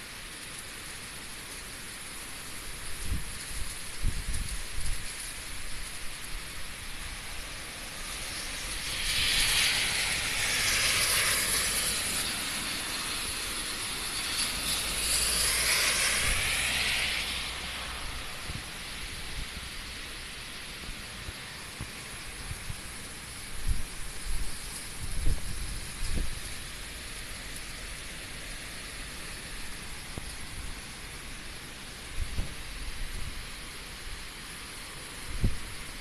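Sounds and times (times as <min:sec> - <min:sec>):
heavy rain hissing: 0:00.0 - 0:36.0
wind rushing: 0:07.5 - 0:13.3, 0:14.4 - 0:20.1, 0:21.8 - 0:27.0.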